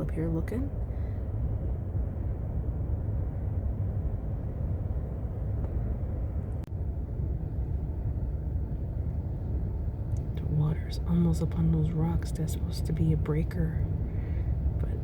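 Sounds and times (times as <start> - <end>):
gale-force wind: 0.0 - 15.0
low rumble inside truck cab: 0.0 - 15.0.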